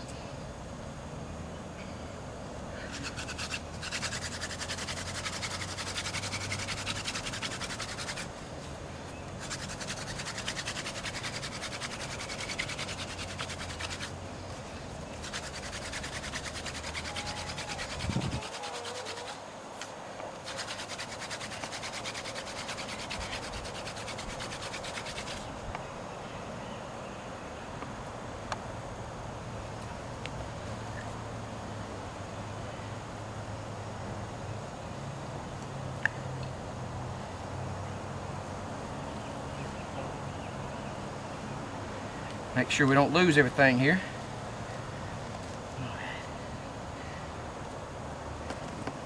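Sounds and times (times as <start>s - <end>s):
hand drill rasping on fireboard: 2.9s - 8.4s, 9.4s - 14.2s, 15.1s - 19.4s, 20.4s - 25.5s.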